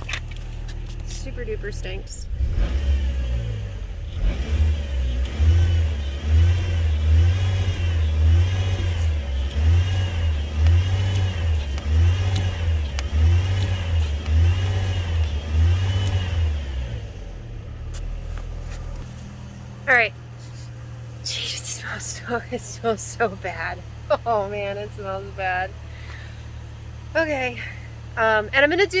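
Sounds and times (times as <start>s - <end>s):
engine revving: 0.0s - 29.0s.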